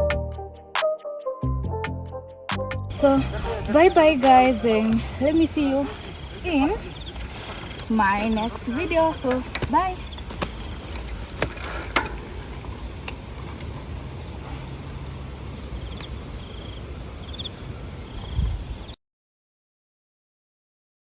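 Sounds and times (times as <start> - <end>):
steady low rumble: 1.7 - 11.4
insect chirping: 2.9 - 19.0
sharp clicks: 7.1 - 8.0.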